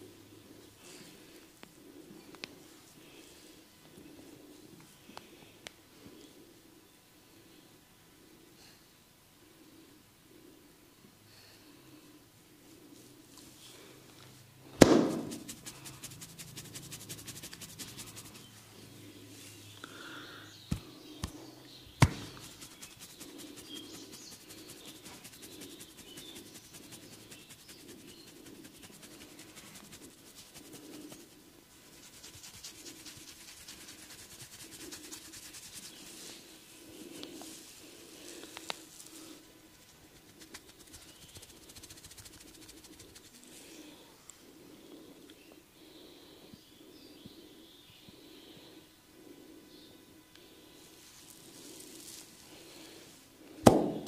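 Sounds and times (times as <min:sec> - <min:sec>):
hands rubbing on skin: 0:15.1 - 0:18.6, 0:22.0 - 0:39.2, 0:39.8 - 0:43.6.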